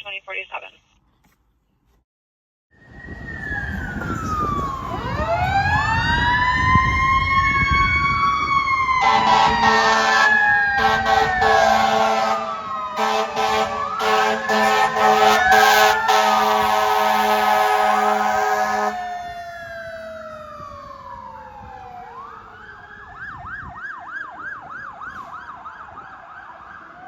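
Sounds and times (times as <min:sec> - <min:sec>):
sirens wailing: 0:02.8 - 0:27.0
air horn blasts: 0:09.0 - 0:19.0.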